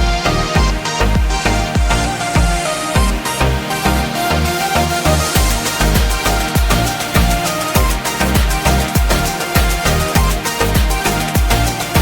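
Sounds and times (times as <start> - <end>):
electronic music with bass drum: 0.0 - 12.0.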